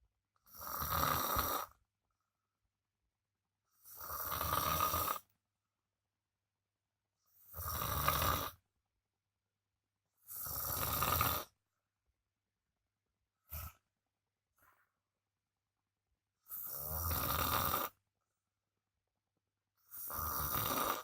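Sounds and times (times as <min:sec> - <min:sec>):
man snoring loudly: 0:00.5 - 0:01.8, 0:03.8 - 0:05.3, 0:07.4 - 0:08.6, 0:10.3 - 0:11.6, 0:16.4 - 0:18.0, 0:19.9 - 0:21.0.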